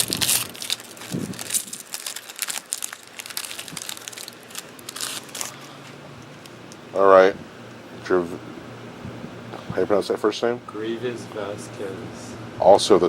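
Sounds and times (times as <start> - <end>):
plastic wrapper crinkling: 0.0 - 6.8.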